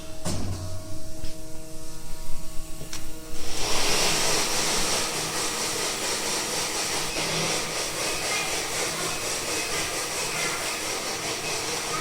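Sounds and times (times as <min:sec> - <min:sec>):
tape cutting machine whirring: 0:03.4 - 0:12.0.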